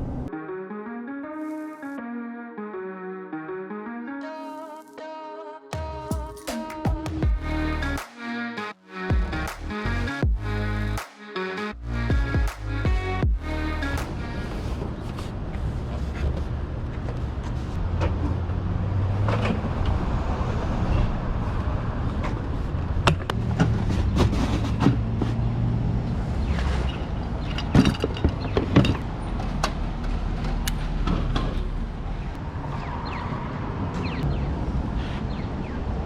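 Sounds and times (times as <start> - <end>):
engine and road rumble: 0.0 - 0.3, 7.0 - 8.1, 9.1 - 11.0, 11.8 - 36.0.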